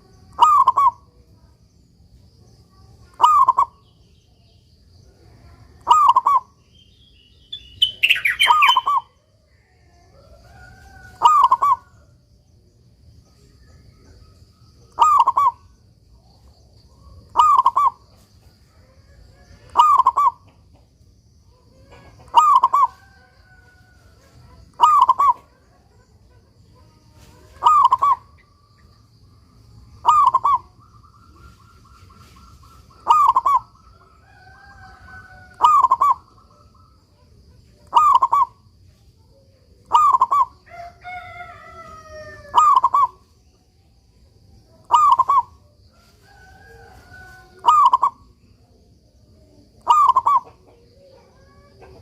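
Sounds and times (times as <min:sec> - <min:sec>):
other birds calling: 0:00.0 - 0:01.1, 0:05.8 - 0:09.2, 0:11.2 - 0:12.0, 0:14.9 - 0:15.8, 0:17.0 - 0:18.2, 0:19.4 - 0:20.7, 0:21.8 - 0:23.0, 0:24.3 - 0:26.2, 0:27.2 - 0:29.0, 0:29.7 - 0:37.1, 0:37.8 - 0:38.7, 0:39.8 - 0:43.4, 0:44.8 - 0:45.7, 0:47.2 - 0:48.5, 0:49.8 - 0:52.0
dove cooing: 0:00.0 - 0:01.2, 0:03.1 - 0:03.8, 0:05.8 - 0:06.6, 0:10.2 - 0:12.0, 0:14.9 - 0:15.7, 0:17.3 - 0:18.0, 0:19.5 - 0:20.5, 0:21.8 - 0:23.2, 0:24.3 - 0:25.7, 0:27.4 - 0:28.4, 0:30.0 - 0:33.9, 0:34.6 - 0:37.0, 0:37.8 - 0:38.6, 0:39.9 - 0:40.6, 0:42.2 - 0:43.2, 0:44.8 - 0:45.6, 0:46.9 - 0:48.3, 0:49.8 - 0:52.0.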